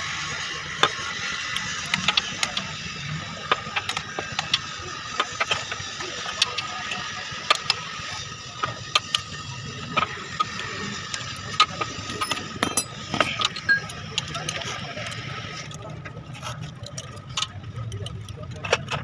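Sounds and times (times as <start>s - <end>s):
hand tools clicking on metal: 12.1s - 14.3s.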